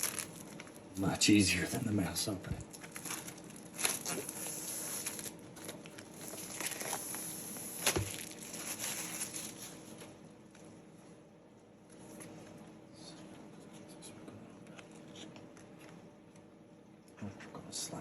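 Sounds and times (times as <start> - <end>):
cardboard and paper rustling: 0.0 - 0.8, 2.7 - 10.1.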